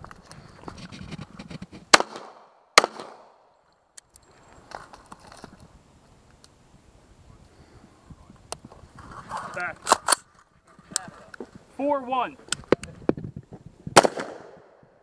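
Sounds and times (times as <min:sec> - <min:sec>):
rustling of movement: 0:00.0 - 0:02.0, 0:04.0 - 0:14.0
rifle shots: 0:01.9 - 0:03.4, 0:14.0 - 0:14.8.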